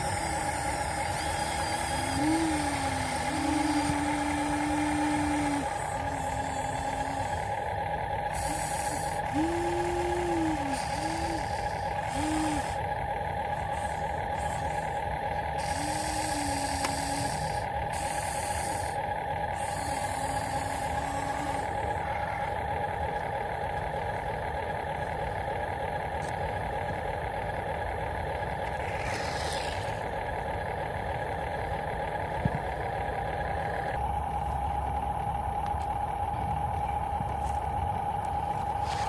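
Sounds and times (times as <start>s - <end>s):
model vehicle motor whine: 0.0s - 39.0s
hissing bursts: 8.3s - 12.8s, 15.6s - 19.0s.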